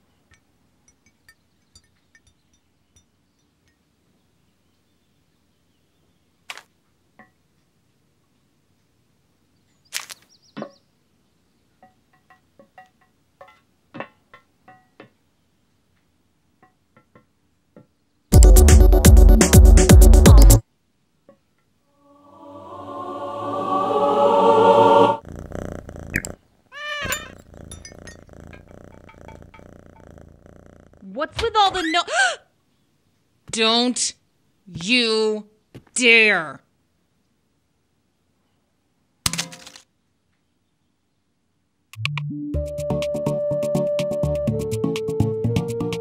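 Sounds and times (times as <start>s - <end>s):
music: 18.3s - 20.6s, 22.4s - 25.2s, 42.0s - 46.0s
cat meowing: 25.6s - 27.8s
wavering high squeak: 26.8s - 27.9s
faint clicks: 27.1s - 30.2s.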